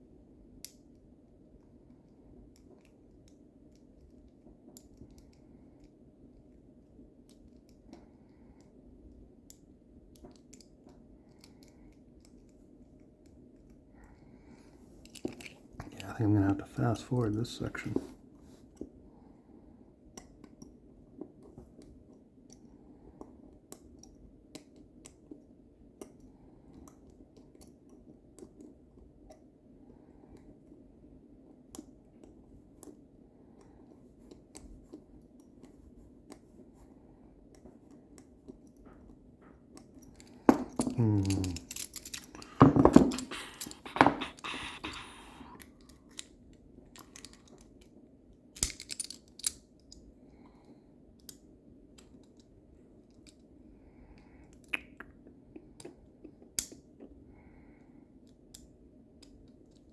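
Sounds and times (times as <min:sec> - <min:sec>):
lock picks clicking and scraping: 0:15.0 - 0:16.0, 0:39.7 - 0:45.0, 0:47.0 - 0:47.9, 0:48.6 - 0:50.1.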